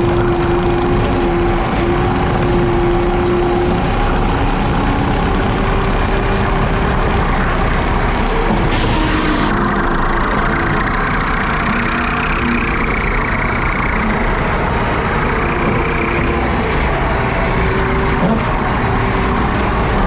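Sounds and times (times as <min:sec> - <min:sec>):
skid steer running: 0:00.0 - 0:20.0
rotary cutter cutting grass: 0:08.5 - 0:09.6.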